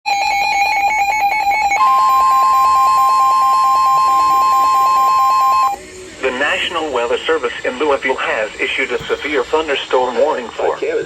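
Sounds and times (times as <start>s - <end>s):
steady warning alarm tone: 0.1s - 5.8s.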